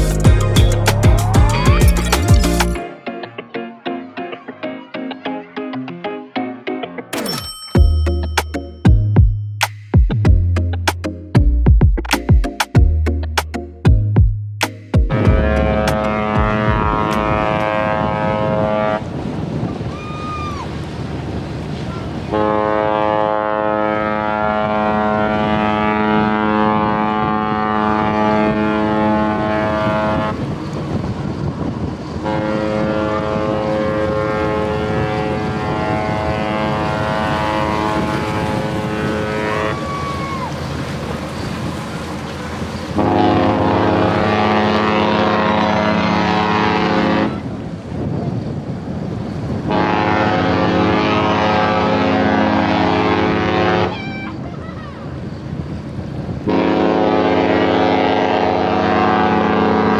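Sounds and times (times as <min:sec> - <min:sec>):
wind noise on microphone: 0:15.0 - 0:59.9
deeper ship horn blasts: 0:15.1 - 0:19.3, 0:22.3 - 0:30.6, 0:32.2 - 0:40.5, 0:42.9 - 0:47.6, 0:49.6 - 0:53.9, 0:56.4 - 0:59.9
ship horn long blasts: 0:15.1 - 0:19.9, 0:22.2 - 0:31.6, 0:32.2 - 0:41.6, 0:42.2 - 0:47.8, 0:49.6 - 0:54.4, 0:56.4 - 0:59.9.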